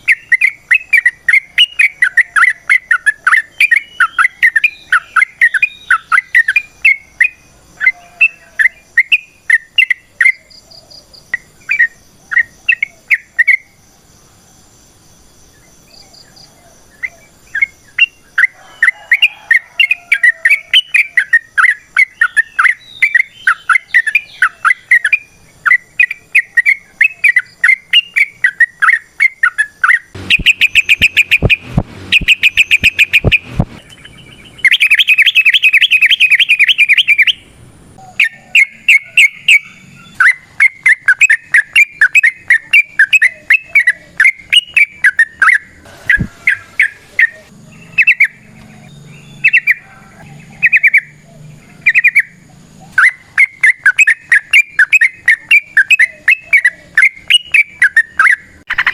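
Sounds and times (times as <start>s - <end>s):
bird singing chirping notes: 0.0s - 13.8s, 15.7s - 58.9s.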